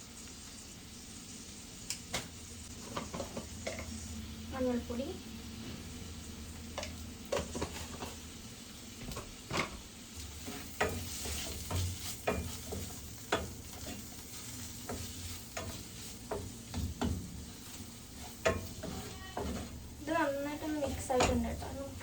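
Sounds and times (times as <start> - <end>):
light sizzle: 0.0 - 22.0
utensil scraping pan: 6.8 - 8.2, 9.2 - 22.0.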